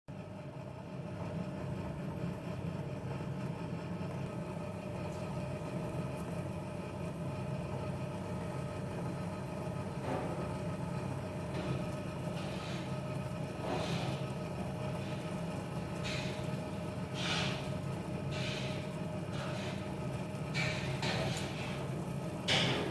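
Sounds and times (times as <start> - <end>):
low mechanical hum: 0.1 - 22.9.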